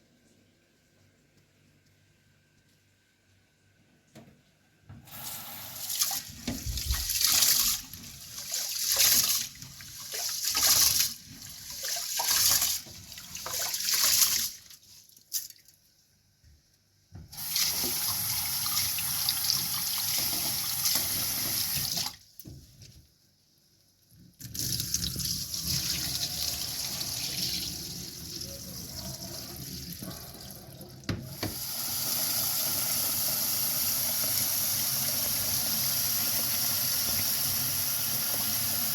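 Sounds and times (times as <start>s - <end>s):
tap water running into sink: 5.1s - 14.4s, 17.3s - 22.1s, 28.8s - 38.9s.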